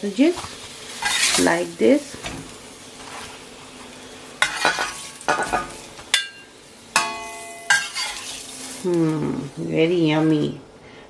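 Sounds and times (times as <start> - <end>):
sausages sizzling in a frying pan: 0.0 - 10.6
metal utensil clinking on pan: 4.4 - 8.5.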